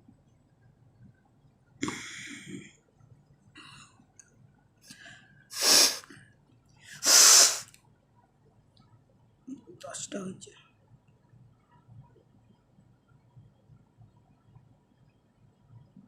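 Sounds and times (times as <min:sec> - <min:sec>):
woman sneezing: 0:07.0 - 0:07.6.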